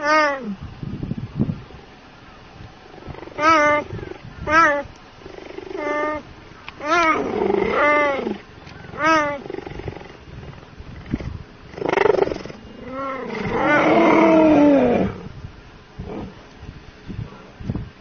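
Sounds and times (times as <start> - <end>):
leopard meowing calls: 0.0 - 0.6, 3.0 - 10.2, 11.0 - 15.3.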